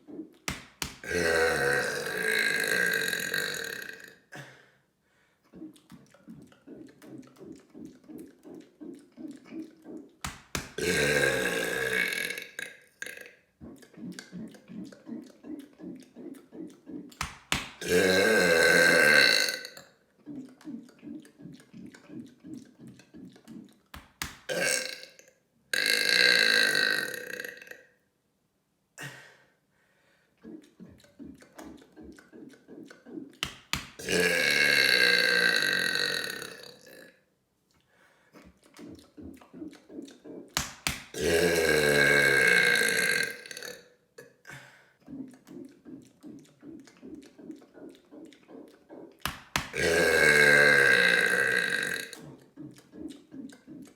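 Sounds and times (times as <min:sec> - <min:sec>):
person burping loudly: 0:00.8 - 0:04.6, 0:06.4 - 0:23.5, 0:24.4 - 0:27.9, 0:31.1 - 0:37.2, 0:39.0 - 0:44.5, 0:45.2 - 0:53.9.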